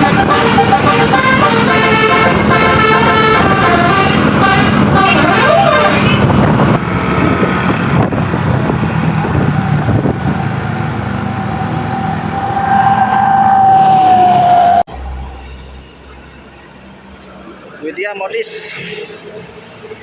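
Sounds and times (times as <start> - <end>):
musical bus horn: 0.0 - 8.2
bus engine running loud: 0.0 - 17.8
held horn tone: 6.7 - 14.9.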